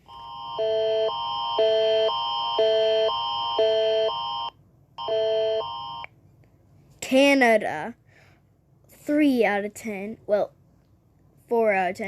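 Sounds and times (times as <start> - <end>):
electronic alarm alternating chords: 0.0 - 6.1.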